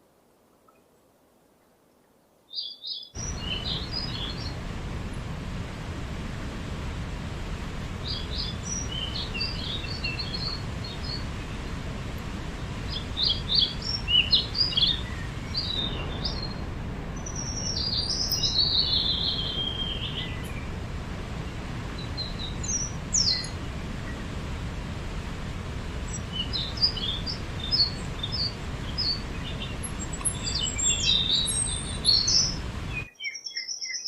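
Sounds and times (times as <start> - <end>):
songbird chirping: 1.6 - 34.0
low background rumble: 3.2 - 33.1.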